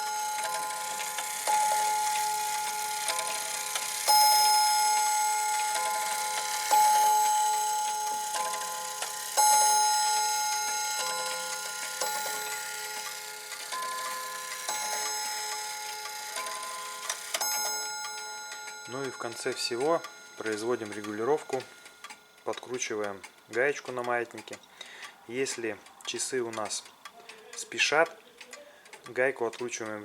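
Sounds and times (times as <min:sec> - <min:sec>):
wall clock striking gong: 0:00.0 - 0:21.9.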